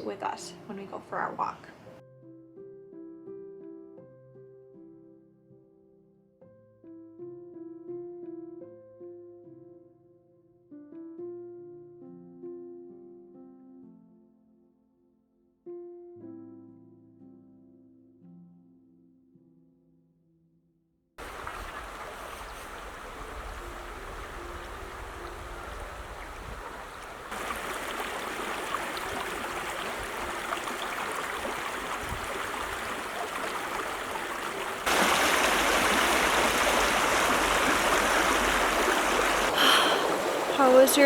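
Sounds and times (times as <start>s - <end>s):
stream rushing and splashing: 21.2s - 41.0s.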